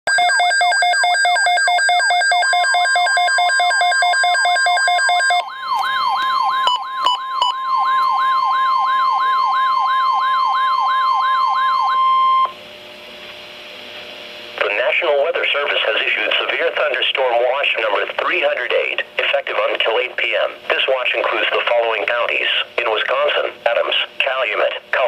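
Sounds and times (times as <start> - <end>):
electronic siren wailing and yelping: 0.1 - 12.6
steady warning alarm tone: 0.1 - 12.6.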